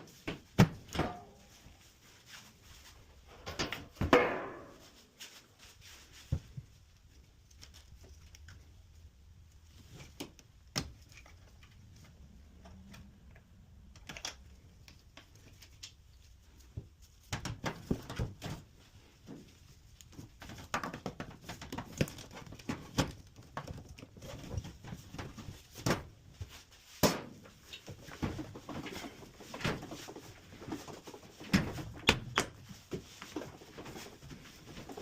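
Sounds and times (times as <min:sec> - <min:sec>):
hands and tools handling parts: 0:00.0 - 0:35.0.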